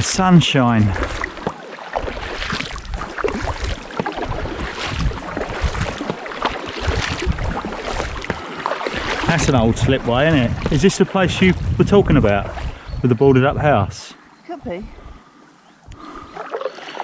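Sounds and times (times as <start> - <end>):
paddles splashing in water: 0.0 - 17.0
water sloshing against hull: 0.0 - 17.0.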